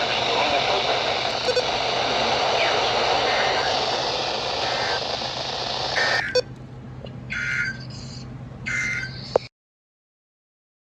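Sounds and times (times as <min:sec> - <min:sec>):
radio static hiss: 0:00.0 - 0:06.4
digital data tone bursts: 0:00.0 - 0:06.5.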